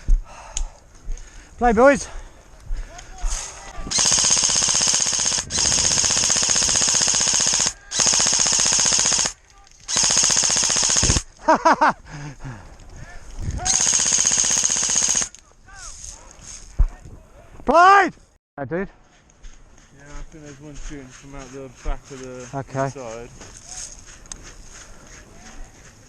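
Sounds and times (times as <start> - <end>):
airsoft gun full-auto bursts: 3.9 - 11.3, 13.6 - 15.4.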